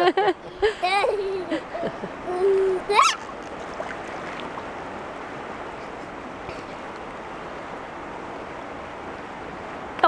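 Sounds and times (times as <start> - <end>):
child's rising squeal: 0.8 - 3.3.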